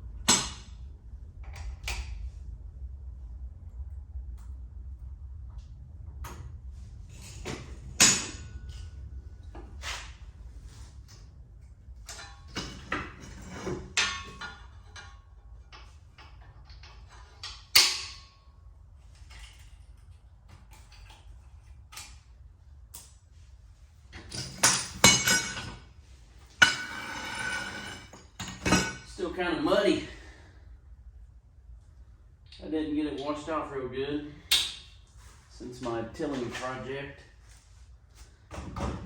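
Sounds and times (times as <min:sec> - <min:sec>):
steady low rumble: 0:00.0 - 0:17.8, 0:28.1 - 0:39.0
metal clanks and scrapes: 0:12.0 - 0:18.4, 0:24.2 - 0:29.2.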